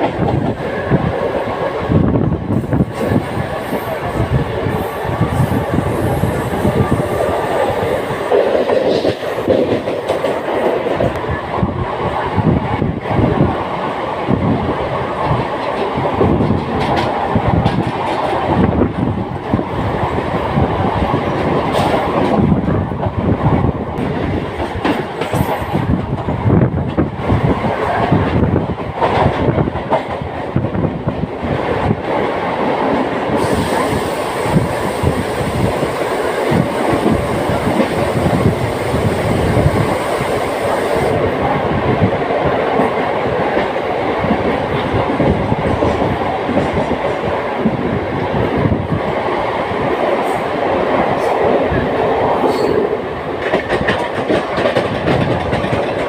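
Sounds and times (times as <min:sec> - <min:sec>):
train rumble: 0:00.0 - 0:56.0.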